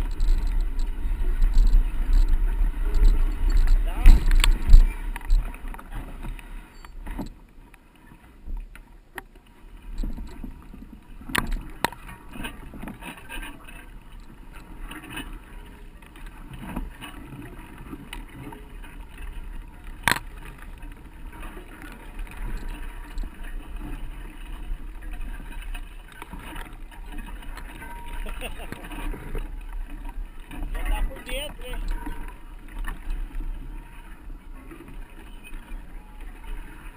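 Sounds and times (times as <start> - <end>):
bike clicks and knocks: 0.0 - 7.4, 11.2 - 14.3, 19.9 - 21.0
wind and tyres rumbling: 0.0 - 36.9.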